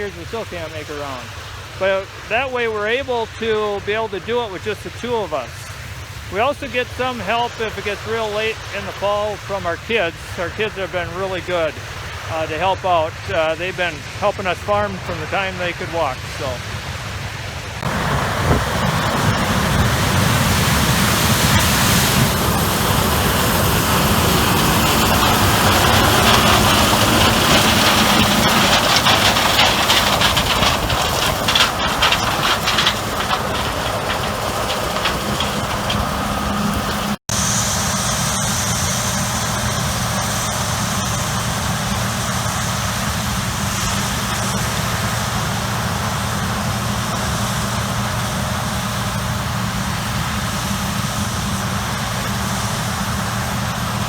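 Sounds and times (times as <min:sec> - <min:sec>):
combine harvester engine hum: 0:00.0 - 0:54.0
wind noise on microphone: 0:17.6 - 0:37.2.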